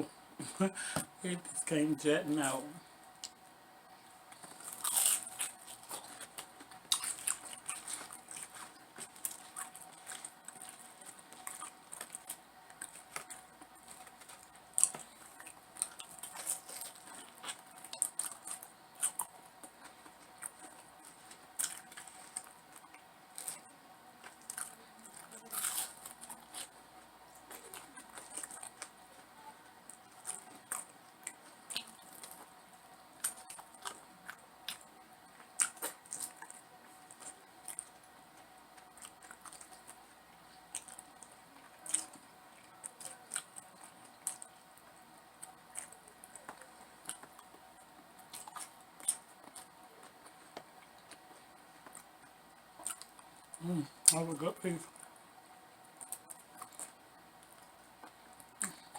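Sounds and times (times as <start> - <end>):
faint steady hum: 0.0 - 58.9
wet chewing: 4.2 - 54.2, 54.9 - 58.9
fried chicken crunching: 4.3 - 29.2, 29.9 - 32.6, 33.2 - 44.8.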